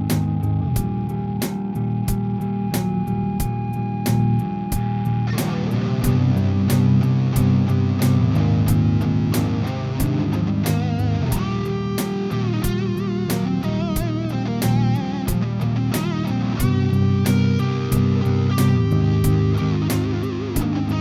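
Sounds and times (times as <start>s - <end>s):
bass: 0.0s - 21.0s
lead guitar bent notes: 0.0s - 21.0s
steady beat: 0.0s - 21.0s
strummed guitar chords: 0.0s - 21.0s.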